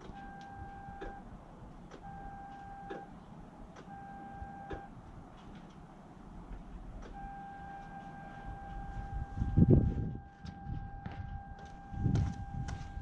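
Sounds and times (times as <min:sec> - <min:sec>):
turn signal beep: 0:00.0 - 0:01.3, 0:01.9 - 0:03.1, 0:03.8 - 0:04.9, 0:07.0 - 0:13.0.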